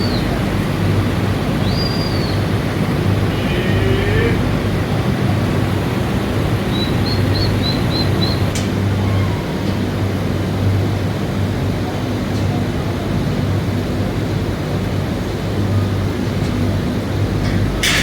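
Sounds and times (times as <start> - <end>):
background rush: 2.4 - 5.9.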